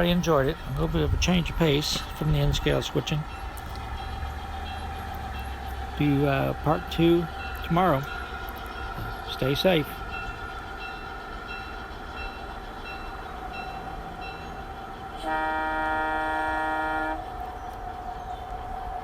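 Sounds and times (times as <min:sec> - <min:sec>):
model locomotive horn blast: 0:15.2 - 0:17.3.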